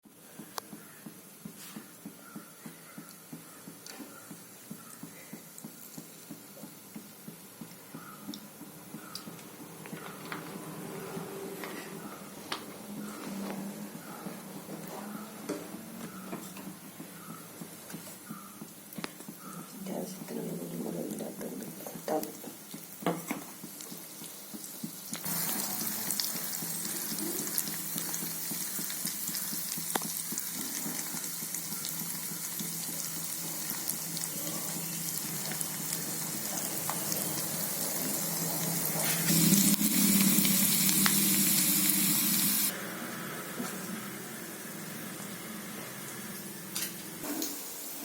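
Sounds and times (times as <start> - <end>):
prawns sizzling in hot oil: 21.0 - 42.7.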